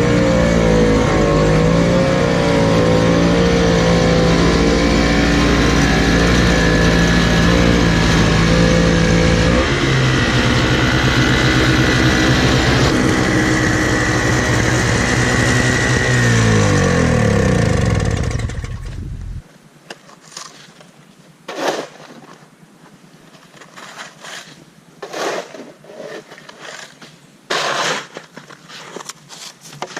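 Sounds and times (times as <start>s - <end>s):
engine running: 0.0s - 19.4s.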